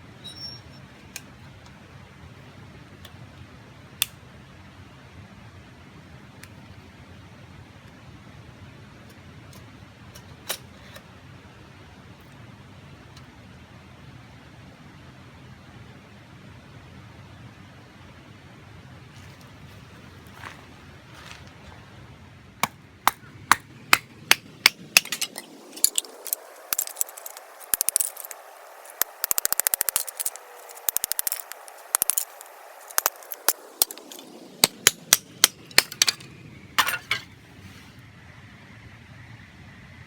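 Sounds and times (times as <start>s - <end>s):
campfire crackling: 19.1s - 37.8s.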